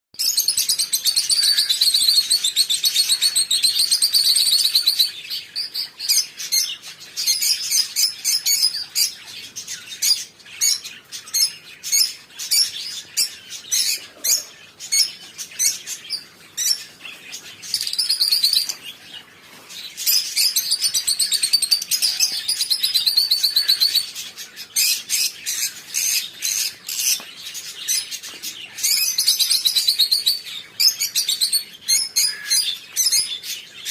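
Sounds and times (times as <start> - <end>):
small parrots chattering and chirping: 0.2 - 33.9.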